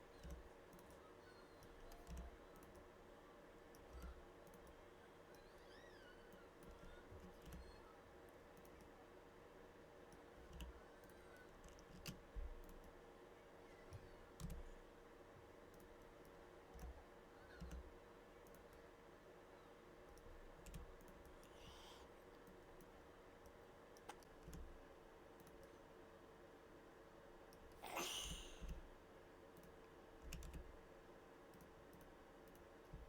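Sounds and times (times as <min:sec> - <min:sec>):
faint steady hum: 0:00.0 - 0:33.0
mouse and keyboard clicks: 0:00.1 - 0:01.0.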